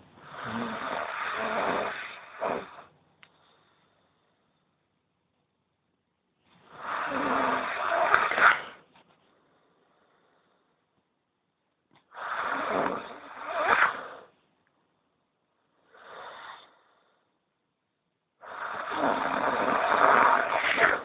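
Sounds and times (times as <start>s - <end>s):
person snoring: 0.2s - 2.9s, 6.7s - 8.8s, 12.1s - 14.3s, 18.4s - 21.0s.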